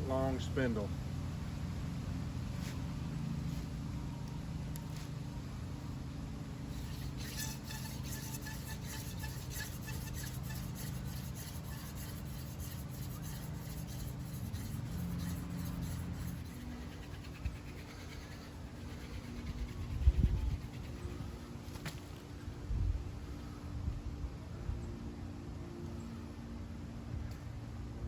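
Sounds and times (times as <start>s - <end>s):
hand drill wood rasping on wood: 6.7s - 21.4s.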